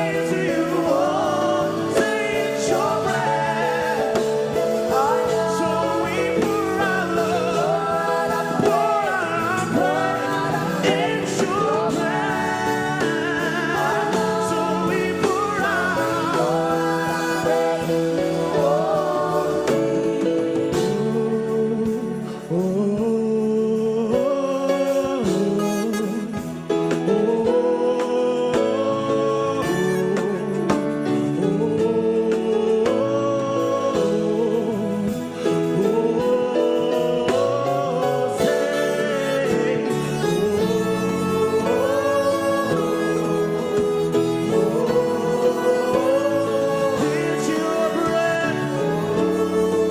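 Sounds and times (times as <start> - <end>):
voices singing held notes: 0.0 - 22.9, 23.9 - 49.9
sustained instrumental chords: 0.0 - 23.2.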